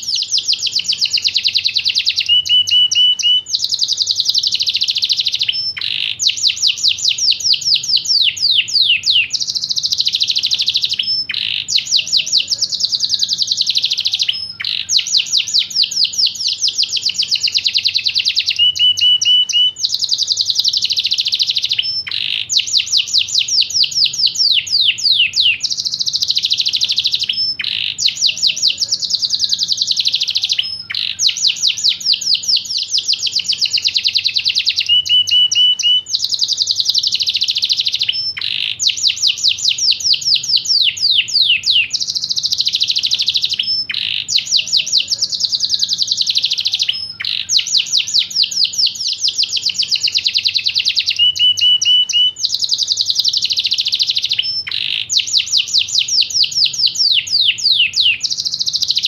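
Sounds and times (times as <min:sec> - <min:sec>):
canary singing trills: 0:00.0 - 0:59.0.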